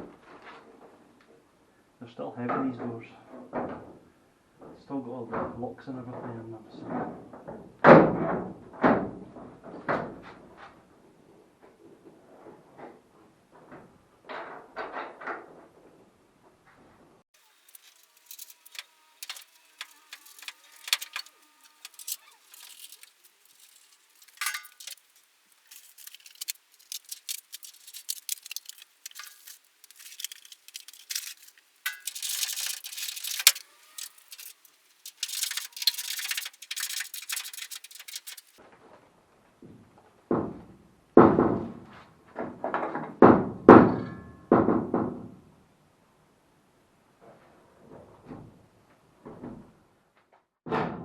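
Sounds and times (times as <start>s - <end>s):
scraping and rattling: 17.4s - 38.6s
metal tools and bolts clinking: 17.5s - 38.6s.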